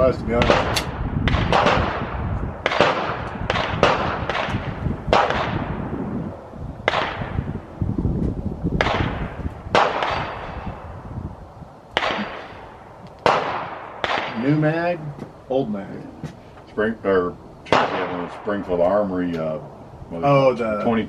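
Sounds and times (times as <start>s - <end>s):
gunshots with echo: 0.4s - 5.9s, 6.8s - 7.5s, 8.8s - 10.8s, 12.0s - 14.9s, 17.7s - 18.6s.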